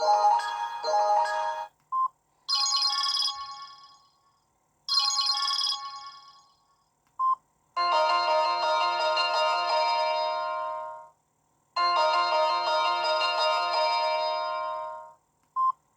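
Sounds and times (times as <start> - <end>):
melodic ringtone: 0.0 - 1.7, 2.5 - 4.0, 4.9 - 6.4, 7.8 - 11.1, 11.8 - 15.1
phone chiming alert tone: 0.0 - 1.7, 7.8 - 11.0, 11.8 - 15.1.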